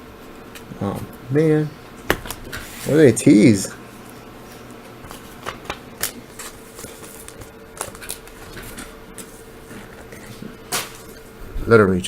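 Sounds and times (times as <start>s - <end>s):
cards being flipped through: 4.5s - 11.2s.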